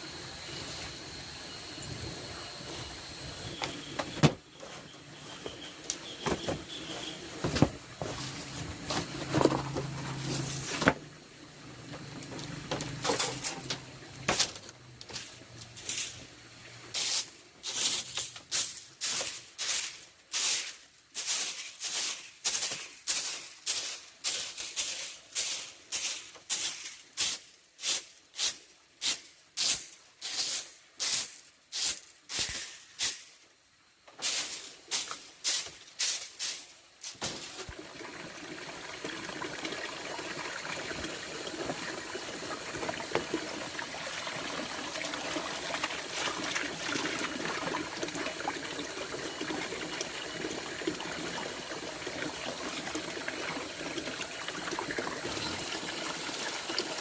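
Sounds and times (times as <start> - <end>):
handling noises: 3.4 - 11.0.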